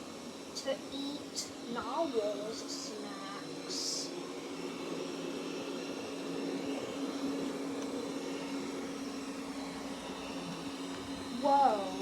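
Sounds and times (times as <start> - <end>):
robot vacuum motor hum: 0.0 - 12.0.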